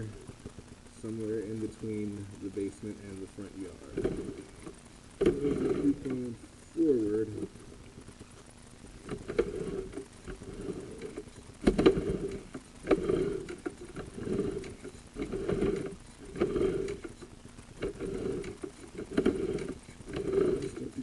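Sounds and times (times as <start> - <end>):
cable rubbing and clunking in drain: 3.7 - 6.3, 9.0 - 21.0.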